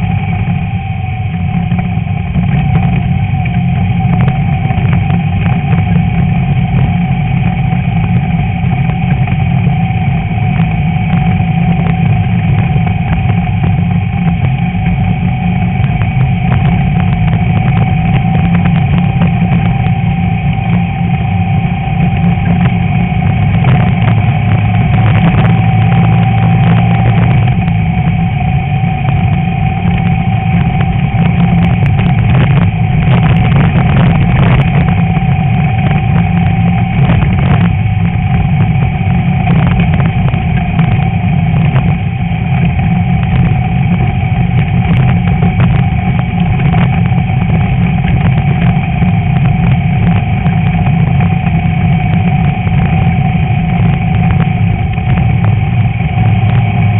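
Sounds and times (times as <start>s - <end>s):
car engine running: 0.0s - 56.9s.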